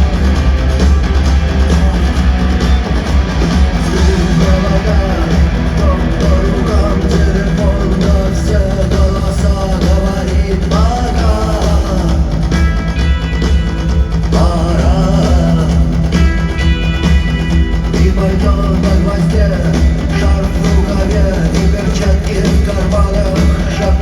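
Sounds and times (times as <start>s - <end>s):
live rock band playing: 0.0s - 24.0s
person singing: 3.8s - 12.5s, 14.3s - 16.4s.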